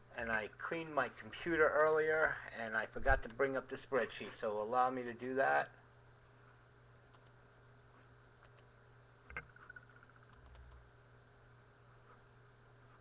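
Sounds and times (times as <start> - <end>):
low steady hum: 0.0 - 13.0
mouse and keyboard clicks: 9.3 - 10.8.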